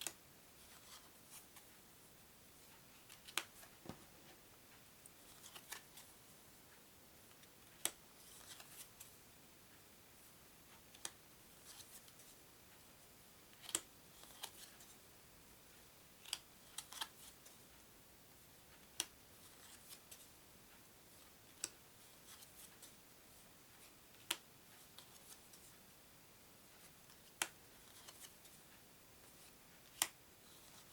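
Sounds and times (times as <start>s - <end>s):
playing cards clicking and tapping: 3.0s - 4.2s, 5.3s - 6.0s, 16.3s - 17.4s, 27.1s - 28.4s, 29.8s - 30.9s.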